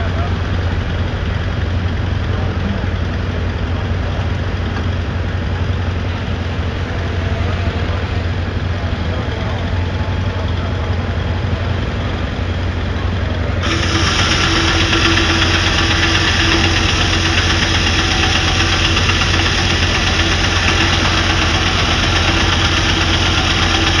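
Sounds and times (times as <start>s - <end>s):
engine running: 0.0s - 24.0s
steady humming note: 13.6s - 24.0s.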